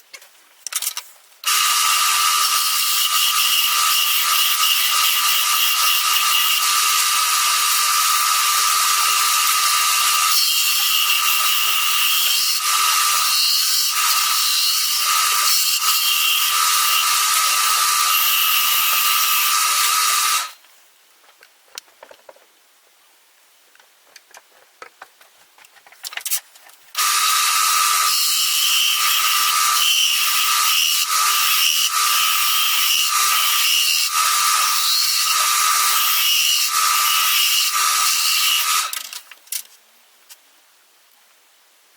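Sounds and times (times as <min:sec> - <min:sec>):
wood lathe whining: 0:01.5 - 0:20.5, 0:27.0 - 0:39.0.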